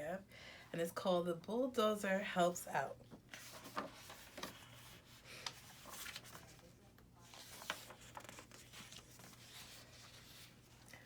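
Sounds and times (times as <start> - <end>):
paper pages rustling: 3.3 - 11.0.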